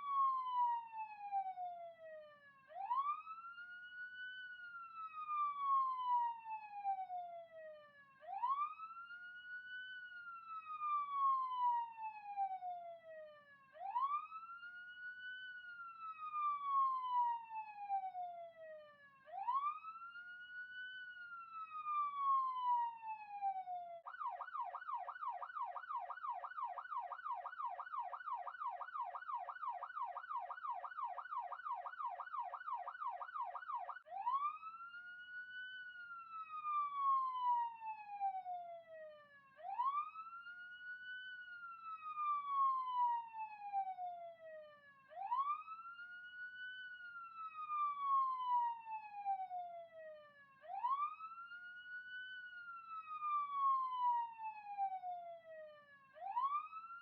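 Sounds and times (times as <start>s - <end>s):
police siren wailing and yelping: 19.3s - 38.6s, 39.6s - 44.1s, 45.2s - 49.6s, 50.6s - 57.0s.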